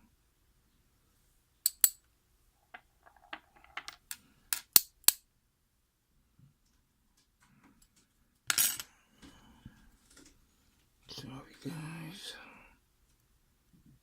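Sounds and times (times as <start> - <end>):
metallic clicks of lock parts: 1.6 - 2.0, 4.6 - 5.2.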